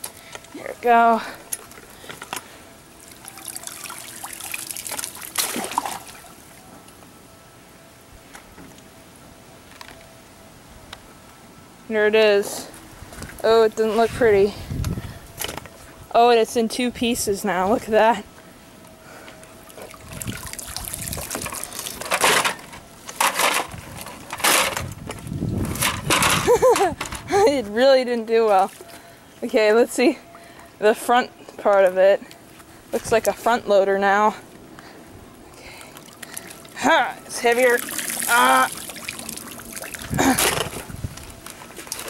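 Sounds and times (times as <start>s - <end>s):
water dripping: 3.0s - 6.3s, 19.7s - 22.1s, 35.7s - 40.2s
water splashing and pouring: 3.0s - 6.4s, 19.7s - 22.5s, 37.4s - 41.0s.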